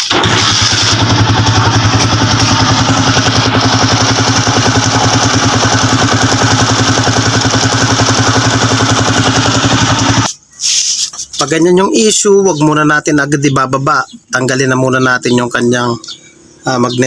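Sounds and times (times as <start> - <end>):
motorcycle engine starting and idling: 0.0 - 10.4.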